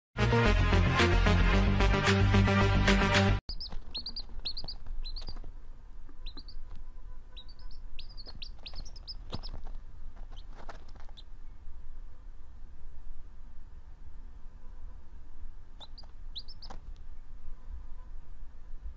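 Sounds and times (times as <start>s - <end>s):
baby birds cheeping: 3.5s - 5.5s, 6.1s - 11.3s, 15.7s - 18.1s.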